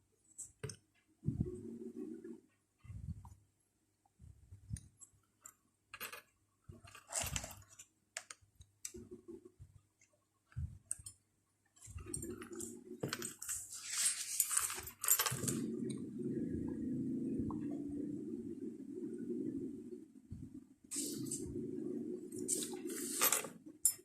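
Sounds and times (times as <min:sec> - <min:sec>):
brush rustling on paper: 0:13.6 - 0:14.6.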